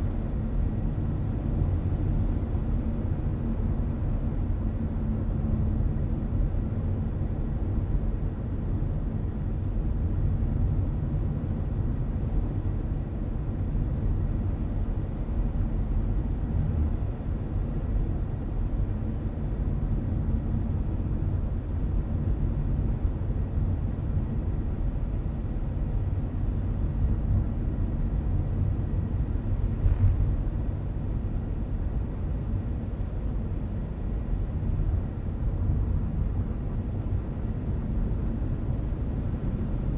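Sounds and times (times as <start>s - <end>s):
car cabin road rumble: 29.1s - 33.6s.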